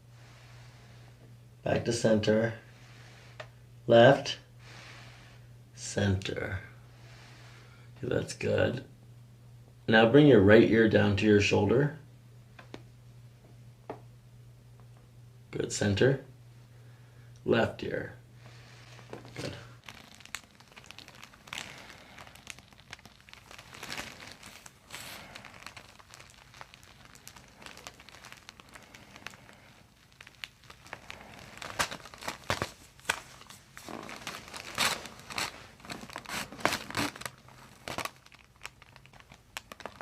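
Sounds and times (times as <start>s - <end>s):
crinkling and rustling: 18.4s - 40.0s.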